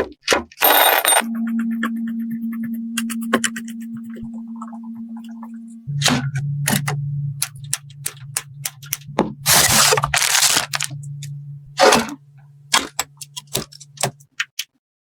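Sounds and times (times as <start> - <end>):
steady low hum: 1.2 - 14.2
computer parts clicking and snapping: 11.8 - 14.8.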